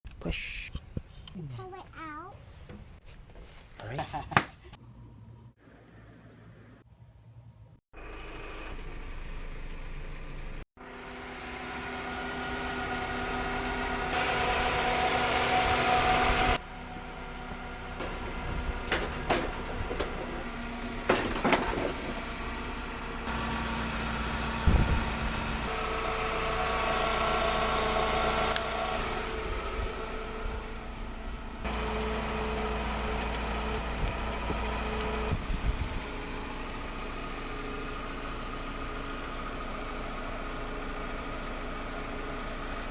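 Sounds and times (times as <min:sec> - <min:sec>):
car engine running: 0:08.0 - 0:42.9.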